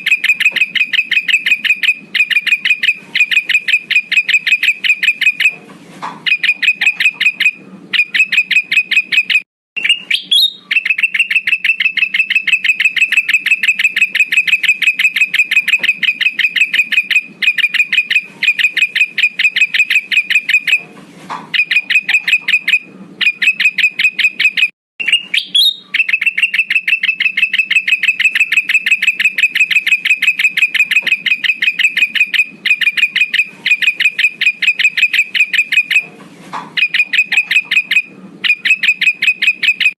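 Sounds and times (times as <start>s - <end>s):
bird chattering high notes: 0.0s - 5.6s, 6.2s - 20.8s, 21.6s - 36.1s, 36.8s - 39.9s.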